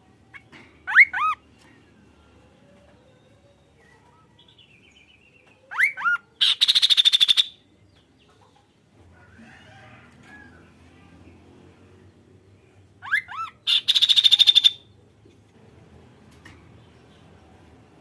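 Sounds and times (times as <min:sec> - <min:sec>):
bird whistling calls: 0:13.1 - 0:14.8.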